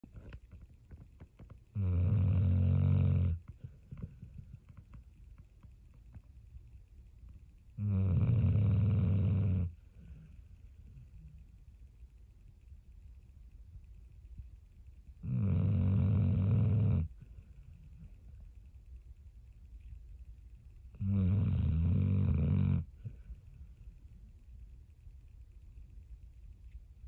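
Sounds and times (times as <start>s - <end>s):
faint low rumble: 0.0s - 27.0s
faint soft ticks: 0.0s - 27.0s
dog snoring: 1.7s - 5.0s, 7.8s - 11.4s, 15.2s - 18.1s, 20.9s - 23.3s.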